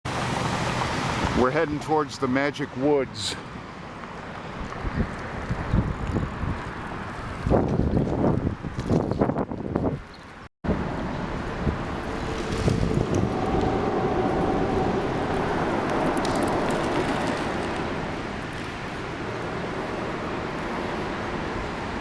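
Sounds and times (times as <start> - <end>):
low rumble of road traffic: 0.1 - 7.6, 10.3 - 22.0
wind noise on microphone: 4.5 - 22.0.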